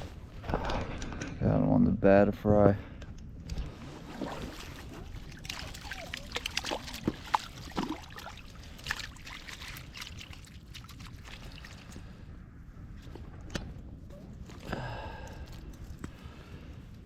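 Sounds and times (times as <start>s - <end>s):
creek water trickling: 4.1s - 12.3s.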